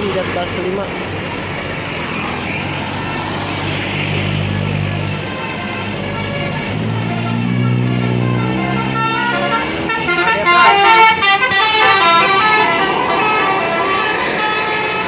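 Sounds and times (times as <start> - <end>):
bus multi-tone horn melody: 4.3 - 15.0.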